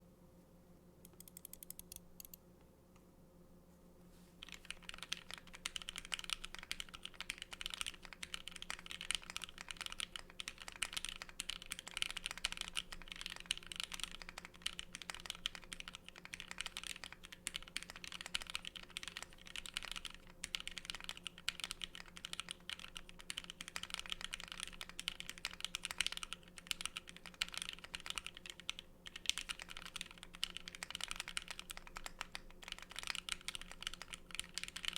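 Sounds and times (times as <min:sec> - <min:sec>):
typing on mechanical keyboard: 0:01.1 - 0:02.4, 0:04.4 - 0:34.9.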